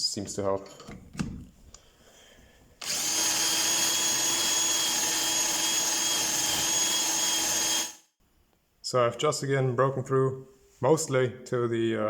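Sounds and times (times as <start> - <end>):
electric drill running: 2.8 - 8.0.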